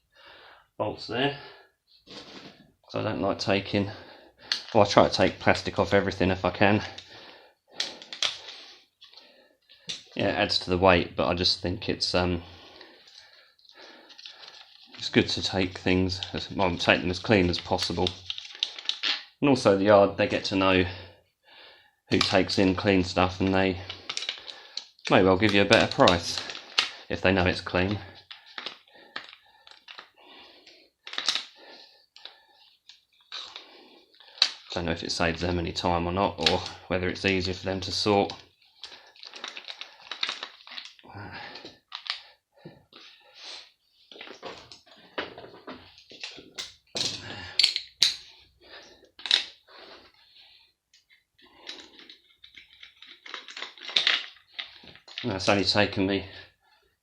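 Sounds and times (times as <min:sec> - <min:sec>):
hand tool clinking on bolts: 0:46.6 - 0:48.3.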